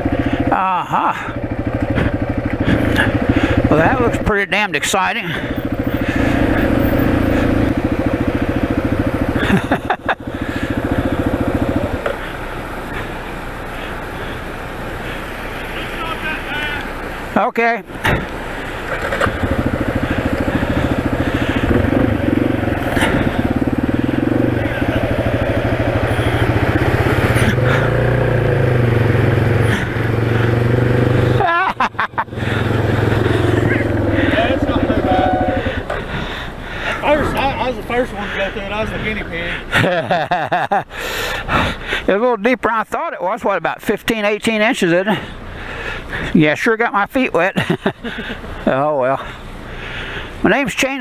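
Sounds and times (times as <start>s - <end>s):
motorcycle engine running: 0.0s - 40.4s
rushing bursts: 32.2s - 39.7s.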